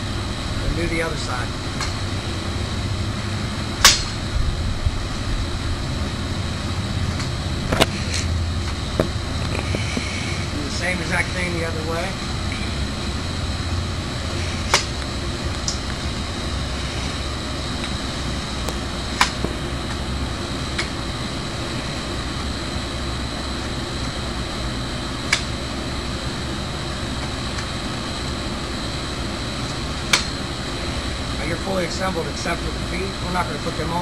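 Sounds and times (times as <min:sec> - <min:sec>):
steady background noise: 0:00.0 - 0:34.0
metal poles clanking: 0:03.8 - 0:04.2, 0:14.4 - 0:15.0.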